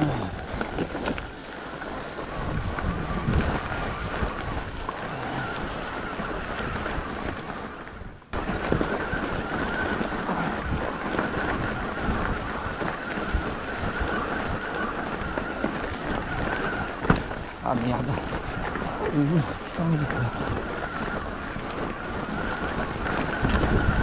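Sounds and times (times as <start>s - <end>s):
bike tyre noise on dirt: 0.0s - 24.0s
wind buffeting the microphone: 0.0s - 24.0s
small knocks from the bike: 15.4s - 17.5s.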